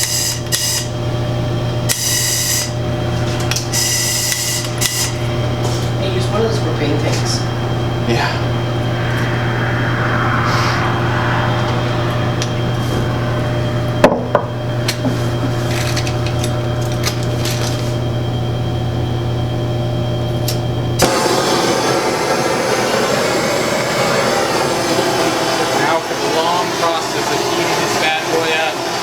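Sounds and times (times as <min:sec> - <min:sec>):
propane torch hissing: 0:01.9 - 0:18.2, 0:20.5 - 0:29.0
low hum: 0:02.7 - 0:25.6.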